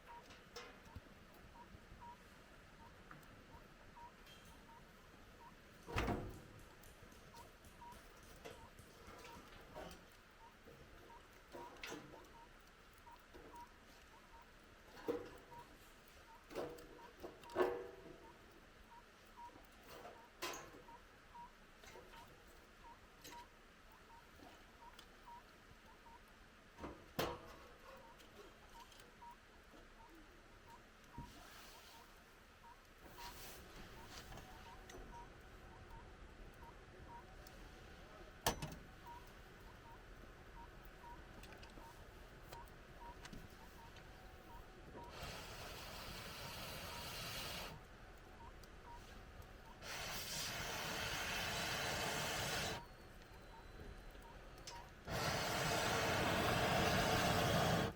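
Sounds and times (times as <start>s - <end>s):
fire rustling quietly: 0.1s - 17.5s, 30.7s - 38.3s, 38.9s - 57.9s
firewood burning: 45.1s - 47.7s, 49.8s - 52.8s, 55.0s - 57.9s
air hissing through blow pipe: 49.8s - 52.8s, 55.1s - 57.9s
fire popping: 55.1s - 57.9s.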